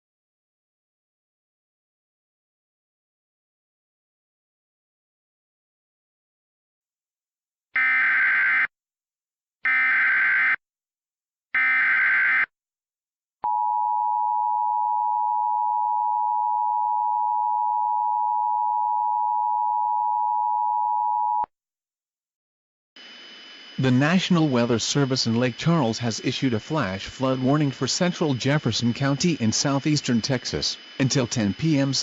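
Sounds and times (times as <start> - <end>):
data tone bursts: 23.0 - 32.0.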